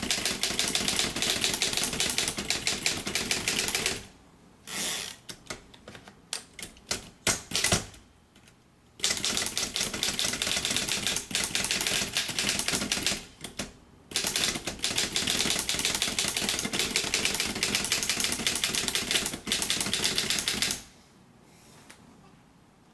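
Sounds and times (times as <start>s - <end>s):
typewriter keystrokes: 0.0s - 4.1s, 6.4s - 8.0s, 9.0s - 20.8s.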